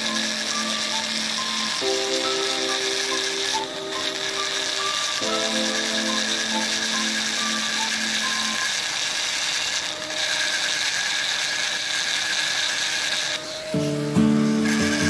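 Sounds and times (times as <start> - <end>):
background music: 0.0 - 8.7, 13.5 - 15.0
power tool whirring: 0.0 - 15.0.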